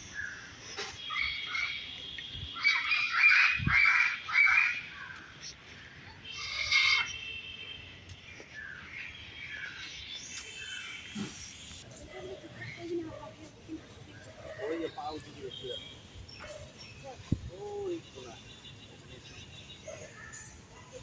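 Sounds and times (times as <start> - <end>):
loud harsh bird calls: 2.6 - 7.4
high bird chirping: 8.2 - 11.8.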